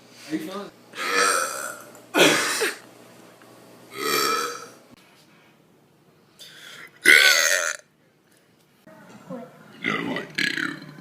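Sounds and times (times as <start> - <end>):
person belching: 1.0 - 2.8, 3.9 - 4.8, 7.0 - 7.9, 10.3 - 11.0.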